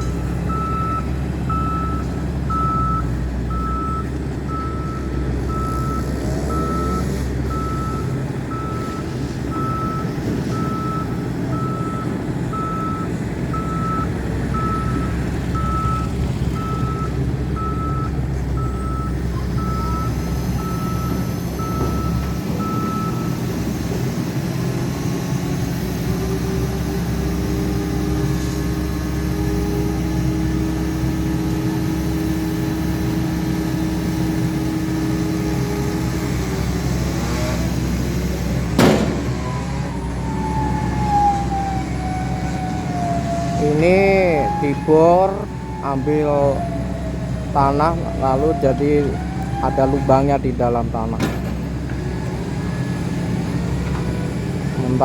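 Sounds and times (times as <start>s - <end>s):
diesel engine droning: 0.0s - 55.0s
warning alarm beeps: 0.5s - 23.6s, 43.5s - 51.4s.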